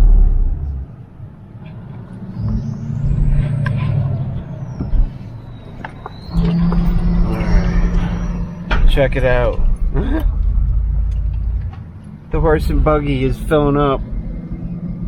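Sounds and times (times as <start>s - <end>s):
vehicle engine running: 0.0s - 15.0s
thin high squeal: 5.2s - 10.0s.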